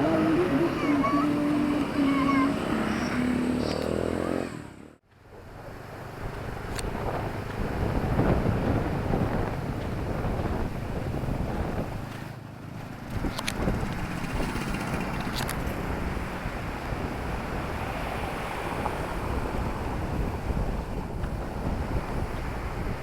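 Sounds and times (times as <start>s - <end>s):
engine humming: 0.0s - 17.6s
passing vehicles rumble: 0.0s - 23.0s.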